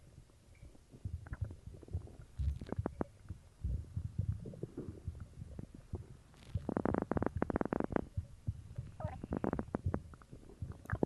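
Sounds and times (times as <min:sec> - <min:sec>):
stomach gurgling and rumbling: 0:00.0 - 0:11.0
bubbly pops: 0:09.0 - 0:11.0.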